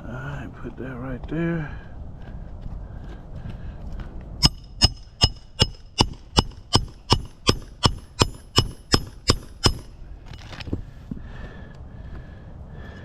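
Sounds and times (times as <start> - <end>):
hammer striking nail: 4.4 - 9.9.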